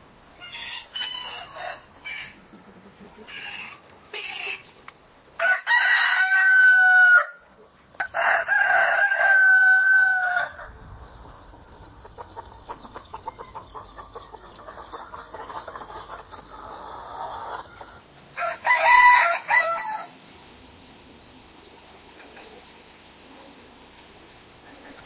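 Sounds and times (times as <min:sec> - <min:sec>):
rooster crowing: 0:00.4 - 0:02.4, 0:05.4 - 0:07.4, 0:08.0 - 0:10.8, 0:18.4 - 0:20.1.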